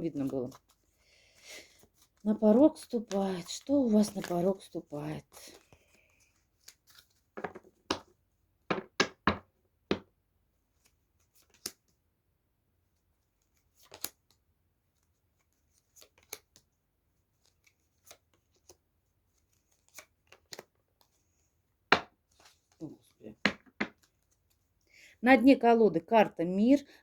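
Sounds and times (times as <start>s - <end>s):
cards tapping on a table: 7.4s - 8.1s, 8.7s - 10.1s, 21.9s - 22.1s, 23.4s - 24.1s.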